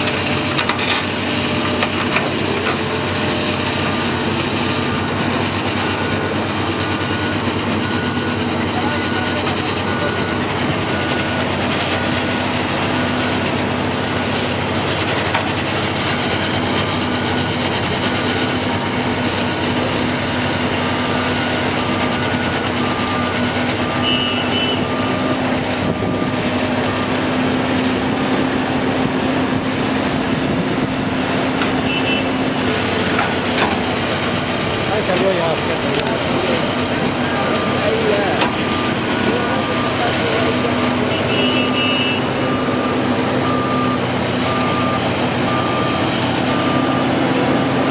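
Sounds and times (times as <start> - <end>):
heavy equipment engine drone: 0.0 - 47.9.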